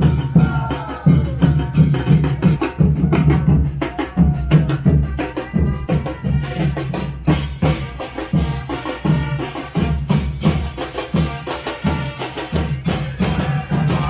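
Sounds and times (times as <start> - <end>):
loud drum beat: 0.0 - 14.0
brass band playing: 4.6 - 14.0.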